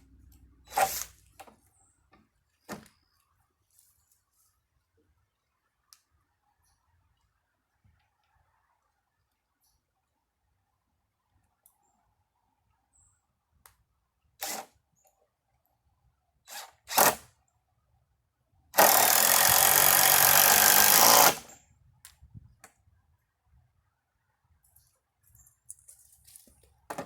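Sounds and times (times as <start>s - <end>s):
power drill driving screw: 0.7s - 1.2s, 14.4s - 14.7s, 16.5s - 17.3s, 18.8s - 21.6s.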